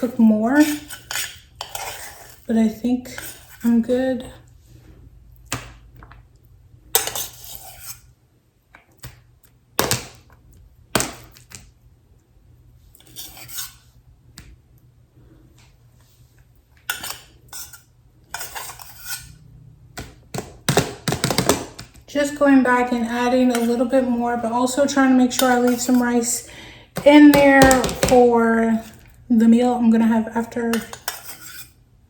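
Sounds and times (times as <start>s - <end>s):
utensil scraping rice from pot: 0.6s - 2.5s, 3.1s - 3.8s, 7.0s - 8.1s, 13.0s - 13.9s, 16.9s - 19.4s, 30.7s - 31.8s
utensil knocking on containers: 20.4s - 21.9s.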